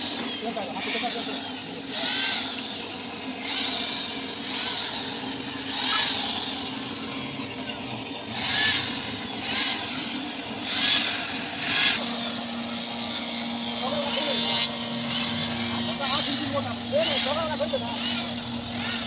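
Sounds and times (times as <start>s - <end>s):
woodworking tool scraping wood: 7.5s - 19.0s.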